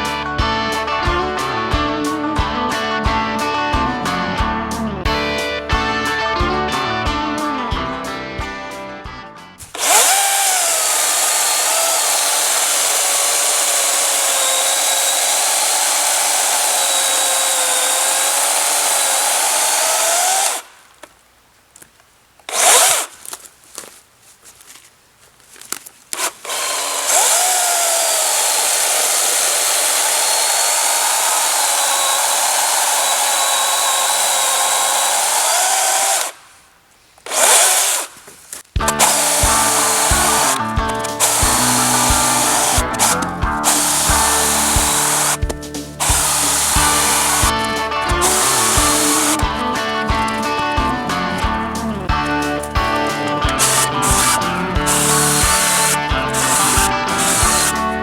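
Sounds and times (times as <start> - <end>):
electric chainsaw cutting log: 9.6 - 20.8, 22.5 - 23.4, 26.1 - 36.4, 37.2 - 38.2, 38.8 - 58.0.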